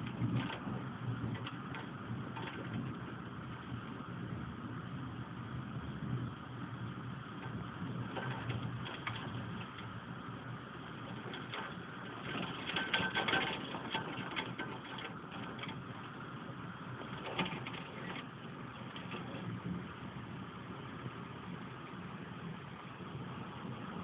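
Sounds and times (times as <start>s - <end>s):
rain: 0.0s - 24.0s.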